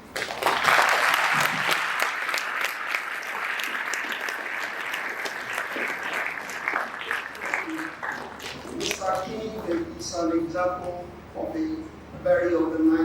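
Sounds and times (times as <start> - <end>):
audience applauding: 0.0 - 9.2.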